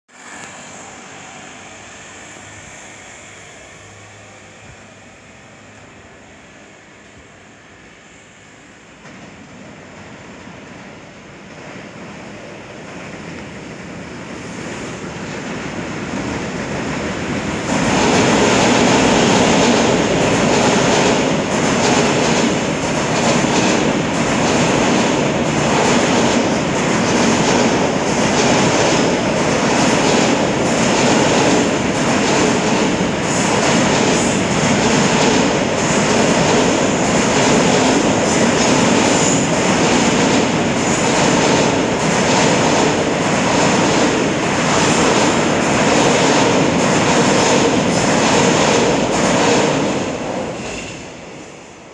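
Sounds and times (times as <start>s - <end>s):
train wheels rumbling on rails: 0.1s - 51.9s
train clatter: 15.4s - 51.2s.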